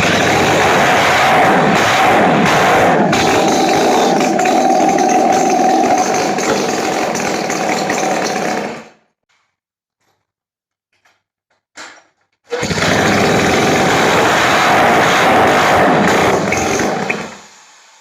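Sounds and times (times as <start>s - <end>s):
two-stroke engine running: 0.0s - 9.0s, 12.5s - 17.4s.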